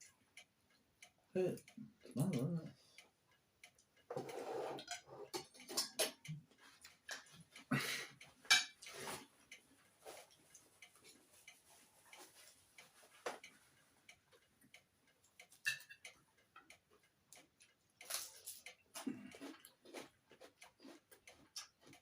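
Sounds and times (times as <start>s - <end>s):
cutlery clicking: 4.8s - 6.2s, 15.6s - 16.0s
chewing: 16.9s - 22.0s.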